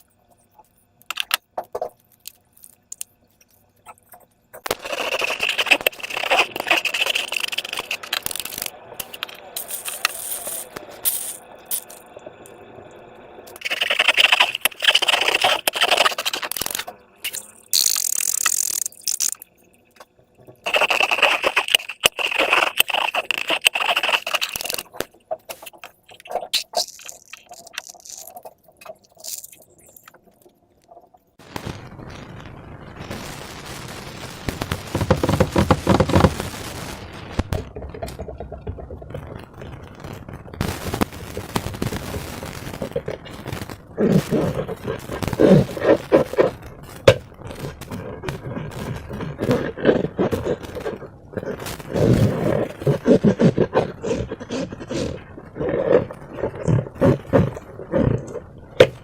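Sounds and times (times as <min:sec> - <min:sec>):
hands squishing slime: 0:04.7 - 0:10.6, 0:20.7 - 0:30.0.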